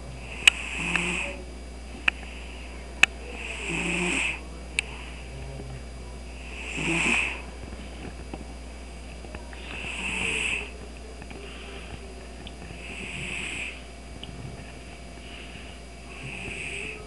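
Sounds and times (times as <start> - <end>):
cat snoring: 0.2 - 1.4, 3.2 - 4.4, 6.4 - 7.5, 9.6 - 10.8, 12.7 - 13.8, 15.2 - 17.0.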